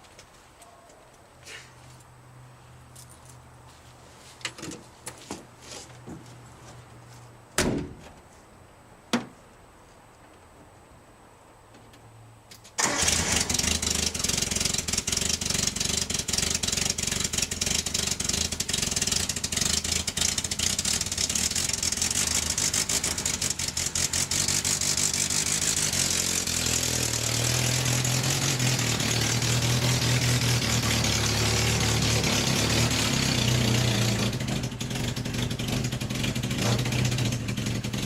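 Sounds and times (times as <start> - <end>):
car engine starting and idling: 12.8 - 38.0
rapid engine ticking: 12.8 - 38.0.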